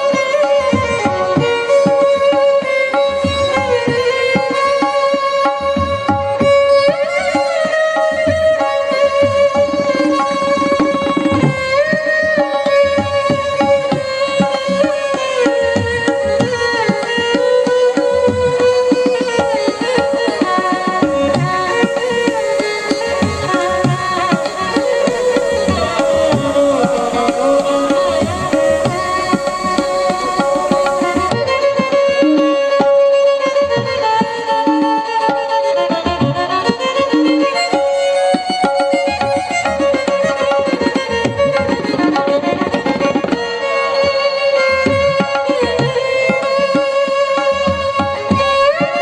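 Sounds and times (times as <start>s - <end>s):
fast hand-drum strokes: 0.1s - 34.4s
bowed string melody: 6.3s - 41.1s.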